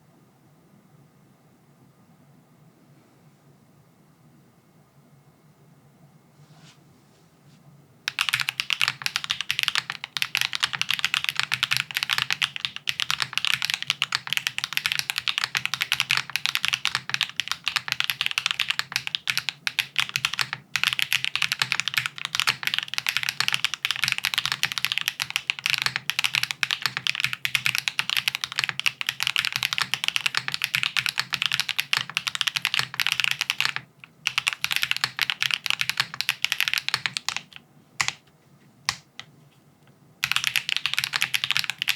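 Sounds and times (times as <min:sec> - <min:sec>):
mechanical keyboard typing: 0:08.1 - 0:38.2, 0:40.2 - 0:41.9.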